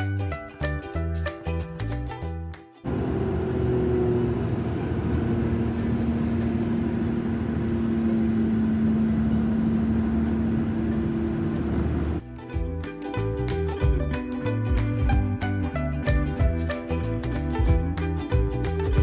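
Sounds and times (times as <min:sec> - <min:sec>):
car road and engine noise: 0:02.8 - 0:12.3.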